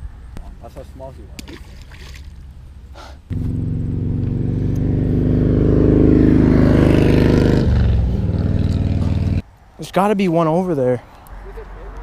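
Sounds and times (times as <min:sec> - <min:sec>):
vehicle engine running: 0:03.3 - 0:09.4.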